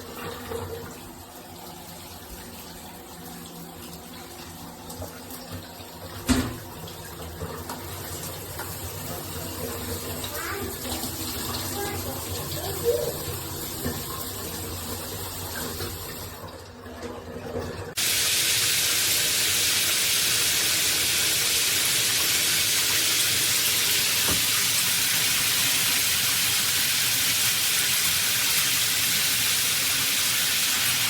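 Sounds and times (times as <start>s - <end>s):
shower spraying water: 7.3s - 16.4s, 17.9s - 31.0s.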